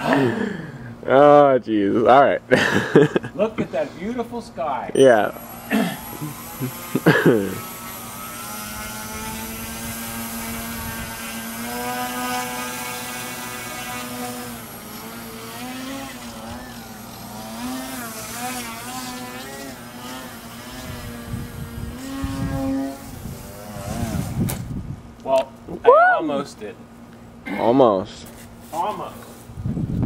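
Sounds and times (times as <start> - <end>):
model airplane motor whine: 5.0 - 24.8.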